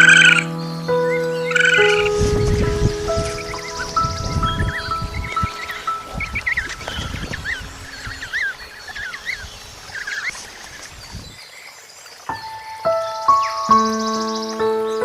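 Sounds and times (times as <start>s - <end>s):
high chirping animal calls: 0.0s - 11.7s.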